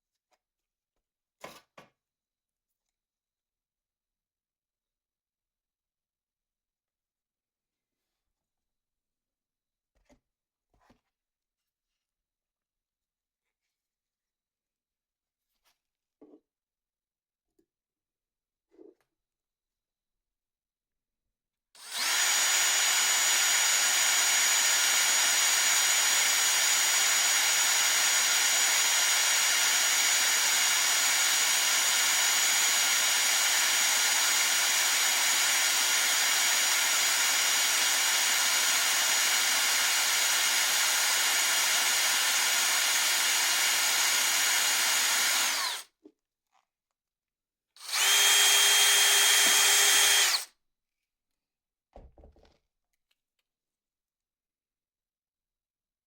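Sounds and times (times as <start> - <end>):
handheld electric power tool running: 21.8 - 45.8, 47.8 - 50.5.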